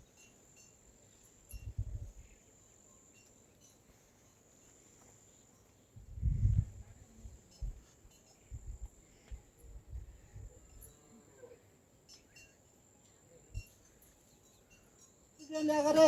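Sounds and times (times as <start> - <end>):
insects trilling: 14.4 - 16.0.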